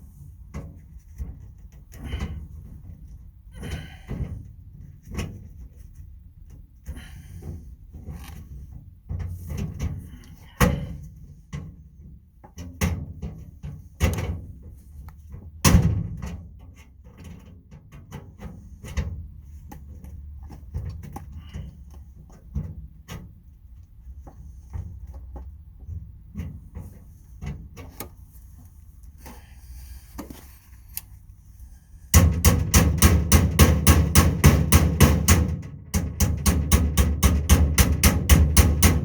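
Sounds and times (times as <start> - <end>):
loud metal bangs: 32.2 - 39.0
metal tool box knocks and clunks: 32.2 - 39.0.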